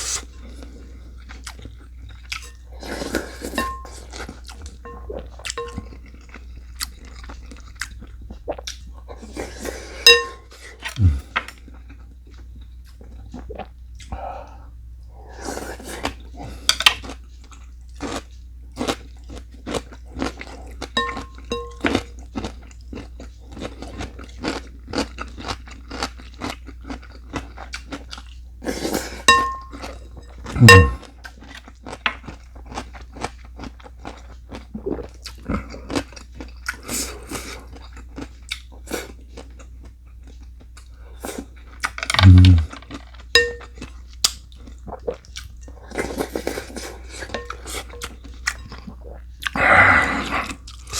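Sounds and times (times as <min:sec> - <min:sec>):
chewing and crunching food: 0:00.0 - 0:50.9
utensils clinking against dishes: 0:02.3 - 0:06.0, 0:10.0 - 0:10.4, 0:21.0 - 0:22.0, 0:29.3 - 0:31.0, 0:42.0 - 0:43.7, 0:47.2 - 0:48.8.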